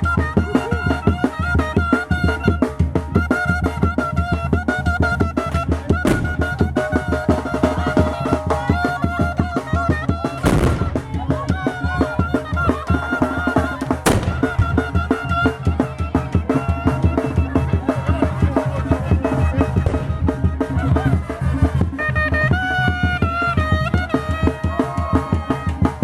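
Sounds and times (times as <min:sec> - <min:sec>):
fast steady drumming: 0:04.5 - 0:16.6
sharp crack: 0:06.1 - 0:06.6, 0:10.4 - 0:11.3, 0:14.0 - 0:15.0
reedy wind melody: 0:06.1 - 0:07.5, 0:10.2 - 0:15.7
burst of noise: 0:14.1 - 0:14.8.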